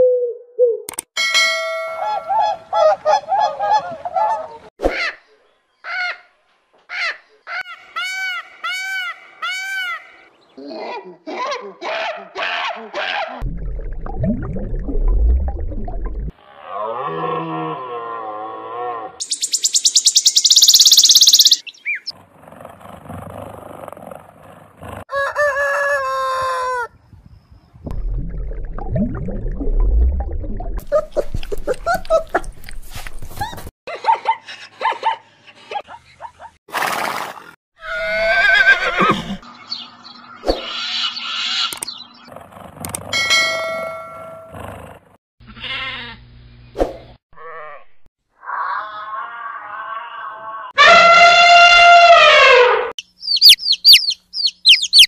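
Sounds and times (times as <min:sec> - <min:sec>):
fast high-pitched animal pulsing: 0:19.2 - 0:21.6
rooster crowing: 0:25.1 - 0:27.0.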